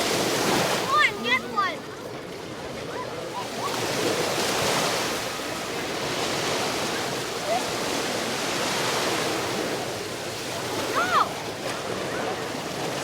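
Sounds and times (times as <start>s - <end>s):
ocean surf breaking: 0.0s - 13.0s.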